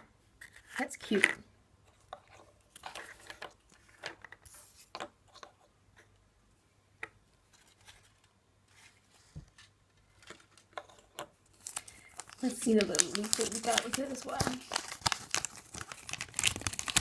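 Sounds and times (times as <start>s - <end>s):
plastic toy clicks and rustles: 10.2s - 17.0s.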